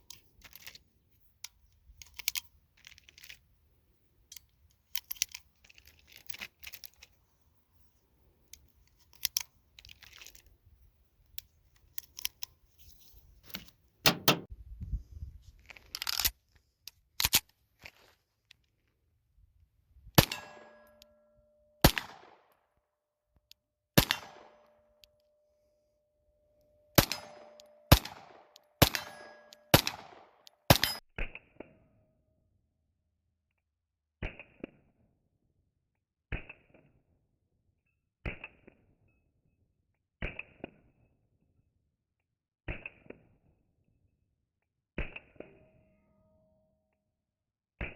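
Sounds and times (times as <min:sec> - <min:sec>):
handling clicks: 0:13.4 - 0:14.5
pistol shots: 0:14.1 - 0:14.5, 0:21.8 - 0:22.4, 0:24.0 - 0:24.7, 0:27.0 - 0:31.0.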